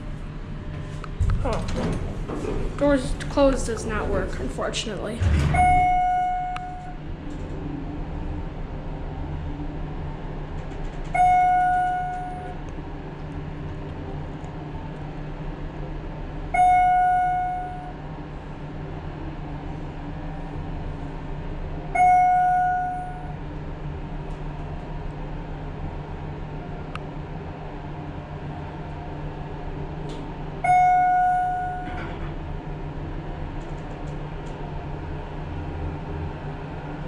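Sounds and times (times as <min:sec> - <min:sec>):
elevator car descending hum: 0:00.0 - 0:37.0
single-tone elevator chime: 0:05.6 - 0:07.0, 0:11.2 - 0:12.6, 0:16.6 - 0:18.0, 0:22.0 - 0:23.4, 0:30.6 - 0:31.9.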